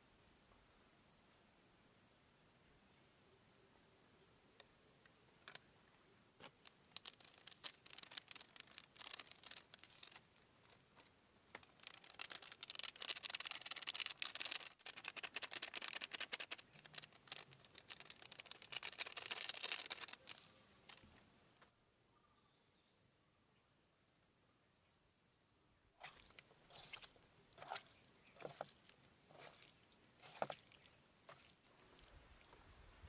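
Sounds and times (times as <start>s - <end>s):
close rustling and crinkling: 6.4s - 21.3s, 26.0s - 33.0s.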